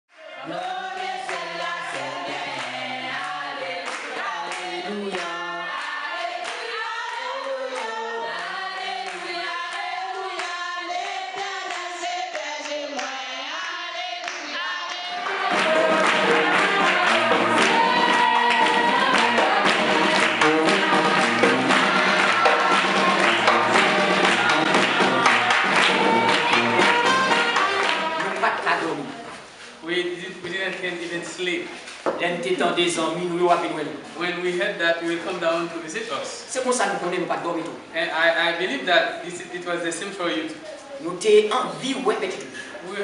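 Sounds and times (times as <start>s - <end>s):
choir singing: 0.2s - 28.6s
music with tambourine tapping: 15.2s - 28.2s.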